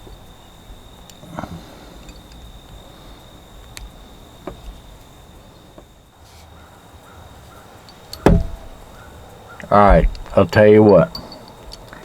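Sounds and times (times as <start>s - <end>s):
insects chirring: 0.0s - 12.0s
light clicks and knocks: 8.1s - 8.9s.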